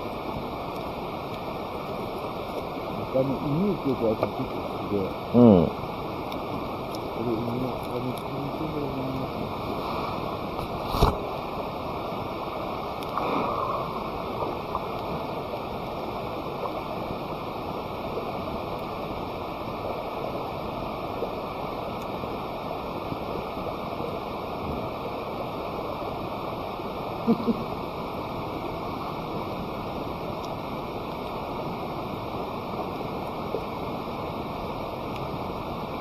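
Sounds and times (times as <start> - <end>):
steady rushing noise: 7.2 - 16.4.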